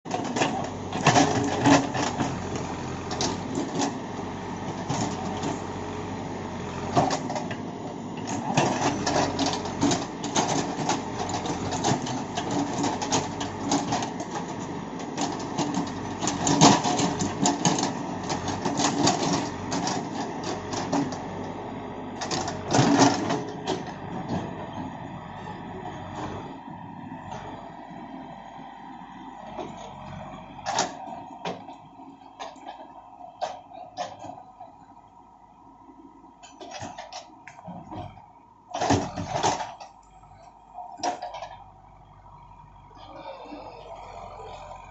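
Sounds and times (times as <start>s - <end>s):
backhoe loader engine running: 0.1s - 44.9s
metal clanks and rattles: 41.0s - 41.6s.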